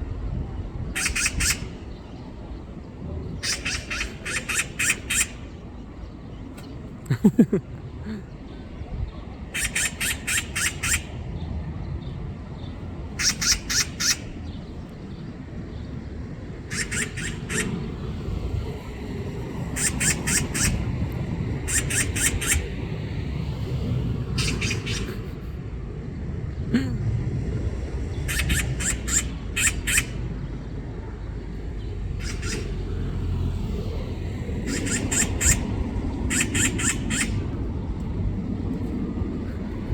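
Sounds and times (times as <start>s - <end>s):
magpie rattling chatter: 1.0s - 1.8s, 3.4s - 5.5s, 9.5s - 11.2s, 13.1s - 14.4s, 16.6s - 17.9s, 19.7s - 20.9s, 21.6s - 22.7s, 24.4s - 25.1s, 28.2s - 30.2s, 32.1s - 32.9s, 34.6s - 37.5s.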